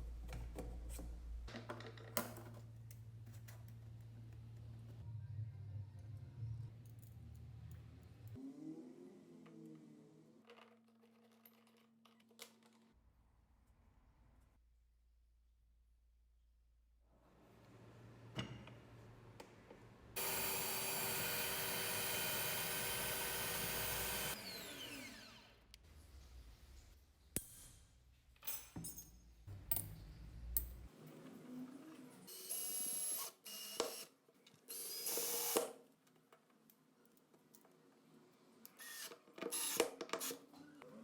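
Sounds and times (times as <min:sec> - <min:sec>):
power tool motor running: 0:20.2 - 0:25.6, 0:38.8 - 0:40.4.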